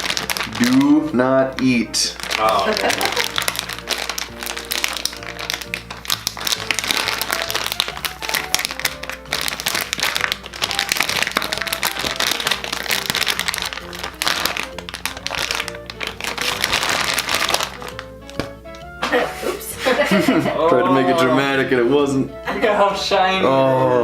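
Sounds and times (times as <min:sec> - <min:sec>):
plastic packaging crinkling: 0:00.0 - 0:18.7
background music: 0:00.0 - 0:24.0.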